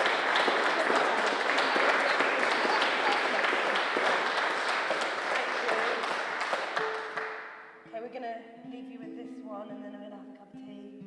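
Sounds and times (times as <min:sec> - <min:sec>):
audience applause: 0:00.0 - 0:07.5.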